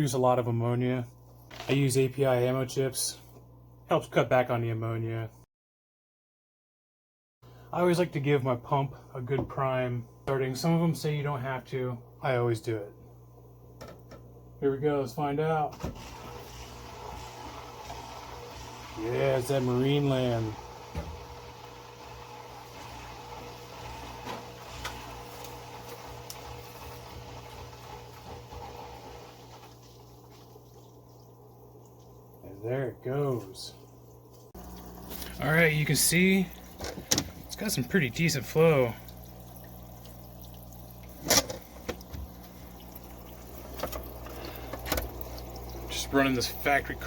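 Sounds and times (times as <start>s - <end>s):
aquarium filter motor humming: 14.7s - 47.0s.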